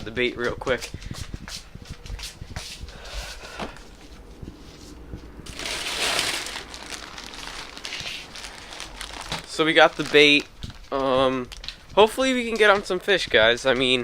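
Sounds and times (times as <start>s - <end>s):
plastic bag crinkling: 5.4s - 13.0s.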